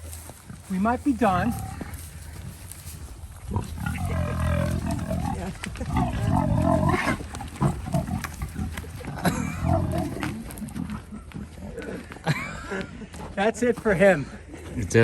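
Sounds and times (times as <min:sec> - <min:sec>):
pig grunting: 0:01.3 - 0:02.0, 0:03.4 - 0:12.0.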